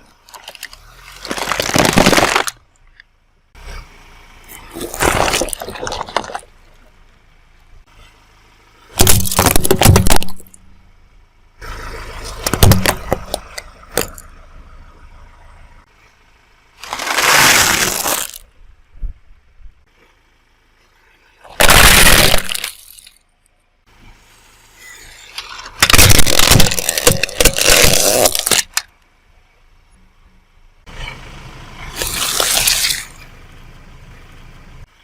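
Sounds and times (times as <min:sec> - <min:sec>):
objects crunching under car tyre: 0:00.0 - 0:03.0, 0:04.5 - 0:07.0, 0:08.9 - 0:10.6, 0:11.6 - 0:14.4, 0:16.8 - 0:18.5, 0:21.4 - 0:23.2, 0:25.0 - 0:28.9, 0:31.9 - 0:33.3.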